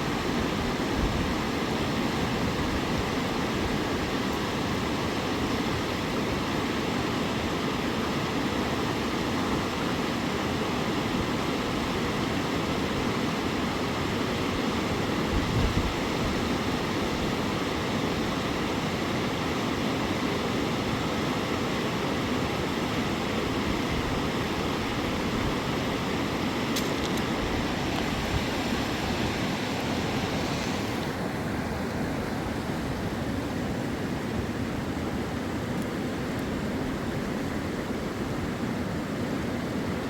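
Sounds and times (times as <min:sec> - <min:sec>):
flowing river water: 0:00.0 - 0:40.0.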